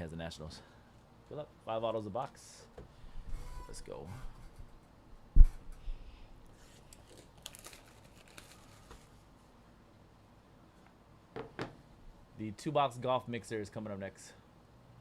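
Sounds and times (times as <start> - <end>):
cardboard packaging being opened: 6.6 - 9.2.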